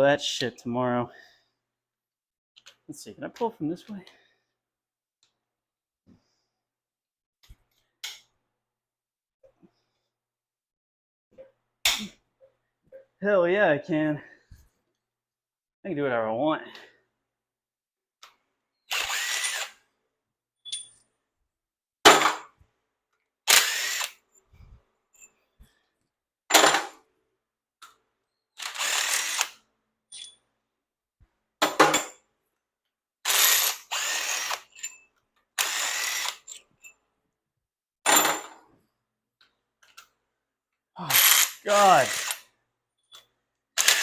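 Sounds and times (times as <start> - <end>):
power drill bursts: 18.9 - 19.8, 23.5 - 24.2, 28.6 - 29.6, 33.2 - 34.8, 35.6 - 36.5, 41.1 - 42.5, 43.8 - 44.0.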